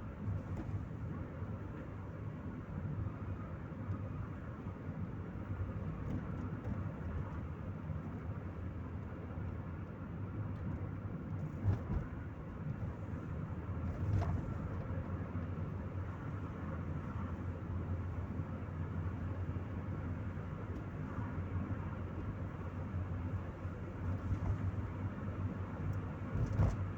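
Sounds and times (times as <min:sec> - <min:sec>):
car engine and road noise: 0:00.0 - 0:26.9
brief thump: 0:26.4 - 0:26.8.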